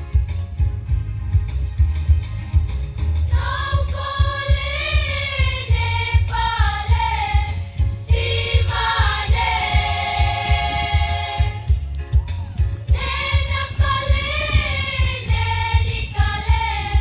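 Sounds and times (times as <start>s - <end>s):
backing track with low beat: 0.0s - 17.0s
choir singing in parts: 3.3s - 12.2s, 12.9s - 17.0s.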